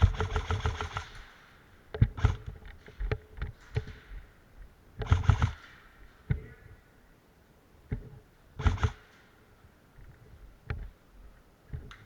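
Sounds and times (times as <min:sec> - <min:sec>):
rapid full-auto burst: 0:00.0 - 0:01.3, 0:02.2 - 0:02.5, 0:05.0 - 0:05.7, 0:08.6 - 0:09.0.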